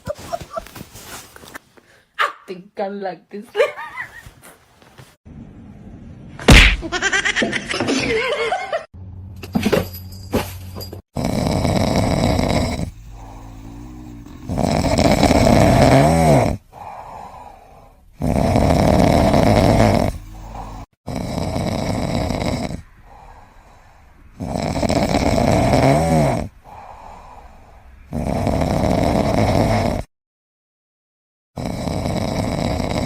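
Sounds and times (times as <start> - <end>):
pet snoring: 11.2 - 16.8, 18.2 - 23.3, 24.3 - 27.2, 28.1 - 30.1, 31.6 - 33.0
quiet breathing: 12.0 - 14.9, 16.6 - 18.2, 19.8 - 20.9, 21.6 - 24.6, 26.4 - 28.1.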